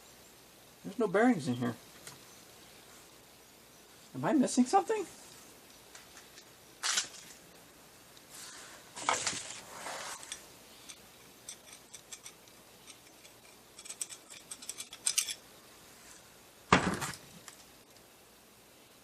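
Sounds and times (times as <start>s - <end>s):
metal parts clinking: 10.2s - 15.4s.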